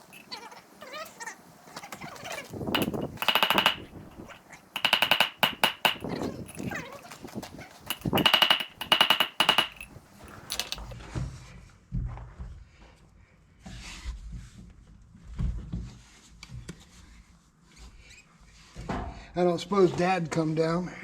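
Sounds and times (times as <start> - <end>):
metal parts and tools clunking: 0.0 - 0.4, 2.8 - 10.9
rapid metallic rattling: 0.0 - 0.4, 2.7 - 6.8, 7.9 - 10.9.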